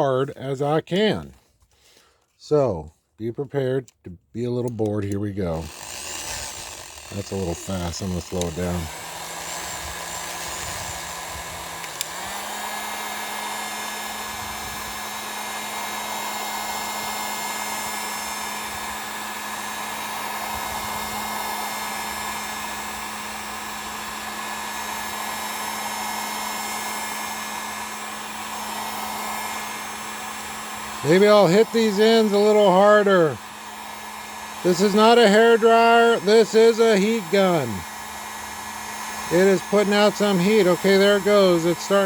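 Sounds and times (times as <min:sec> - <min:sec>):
heat gun blowing: 0:00.4 - 0:02.4, 0:04.5 - 0:42.0
drill humming: 0:04.7 - 0:42.0
click: 0:11.8 - 0:12.1.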